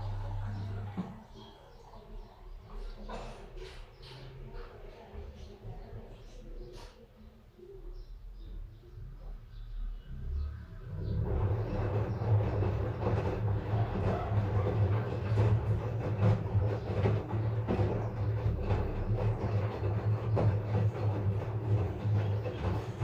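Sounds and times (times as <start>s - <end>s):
washing machine drum spinning: 0.0s - 2.2s, 10.8s - 23.0s
cabinet rattling and knocking: 11.1s - 23.0s.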